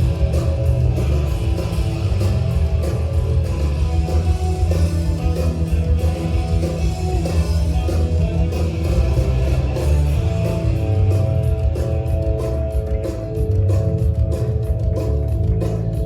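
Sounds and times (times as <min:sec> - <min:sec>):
loud music with heavy bass: 0:00.0 - 0:16.0.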